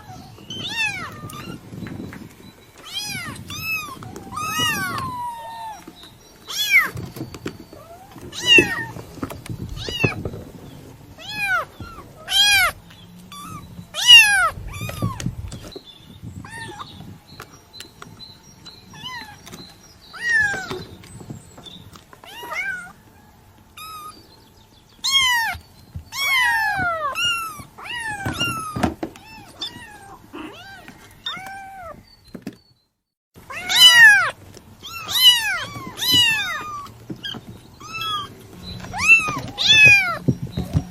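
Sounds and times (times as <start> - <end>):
kitten mewing: 33.5 - 38.3.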